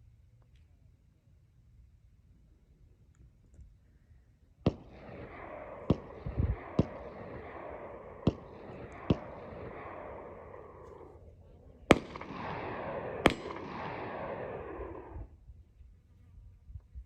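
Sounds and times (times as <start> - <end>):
pistol shots: 4.6 - 15.2.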